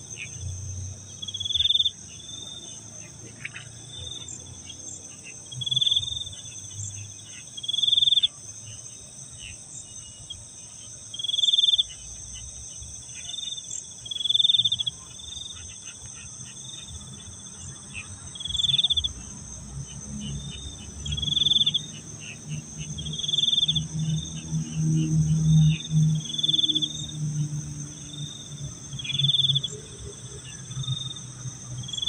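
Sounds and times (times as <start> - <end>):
crickets chirping: 0.0 - 32.0
loud pulsing insect trill: 0.0 - 32.0.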